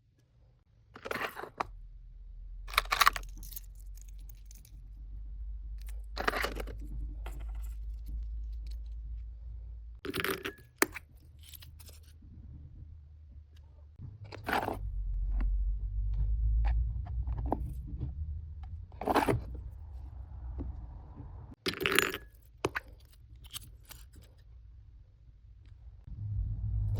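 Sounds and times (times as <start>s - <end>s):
steady low hum: 12.1s - 21.6s, 26.0s - 26.9s.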